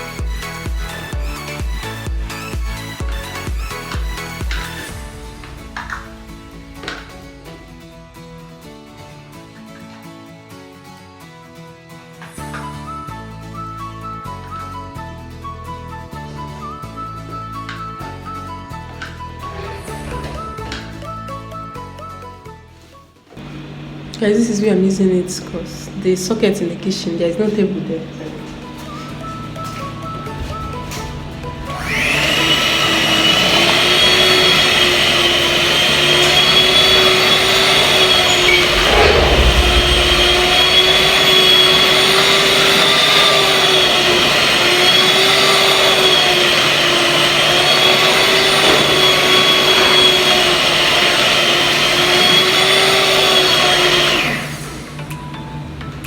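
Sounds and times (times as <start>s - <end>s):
electric mixer motor whining: 0.0s - 7.2s, 29.5s - 55.3s.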